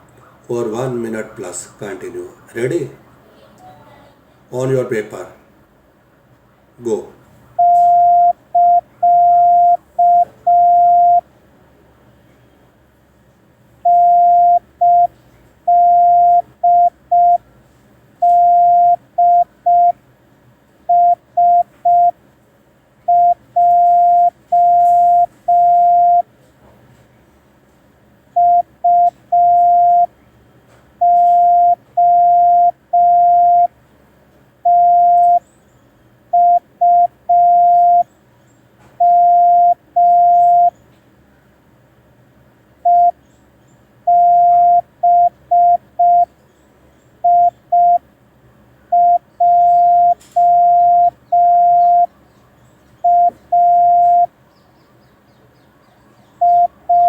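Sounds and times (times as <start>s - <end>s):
morse code beeps: 7.6s - 11.2s, 13.9s - 15.1s, 15.7s - 17.4s, 18.2s - 20.0s, 20.9s - 22.2s, 23.1s - 26.3s, 28.4s - 30.1s, 31.0s - 33.7s, 34.7s - 35.4s, 36.4s - 38.1s, 39.0s - 40.7s, 42.9s - 43.2s, 44.1s - 46.3s, 47.2s - 48.0s, 48.9s - 52.1s, 53.0s - 54.3s, 56.4s - 57.0s.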